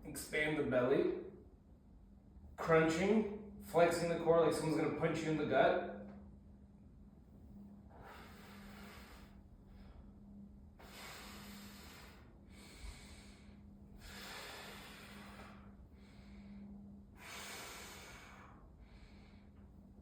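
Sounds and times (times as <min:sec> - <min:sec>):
faint steady hum: 0:00.0 - 0:20.0
person breathing through nose: 0:07.9 - 0:10.0, 0:10.8 - 0:19.5.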